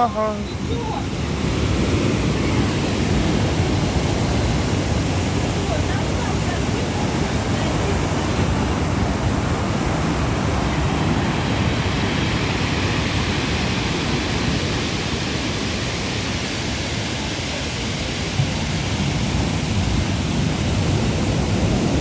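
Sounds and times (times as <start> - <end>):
surf rushing: 0.0 - 22.0.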